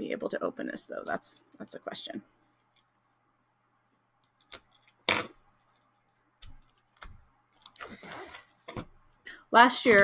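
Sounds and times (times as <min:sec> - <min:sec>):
packaging crackle: 0:04.3 - 0:08.9.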